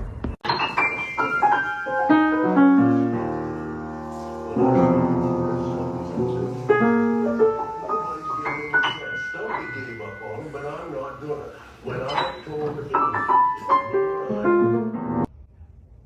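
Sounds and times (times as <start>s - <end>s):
piano music: 0.4s - 15.3s.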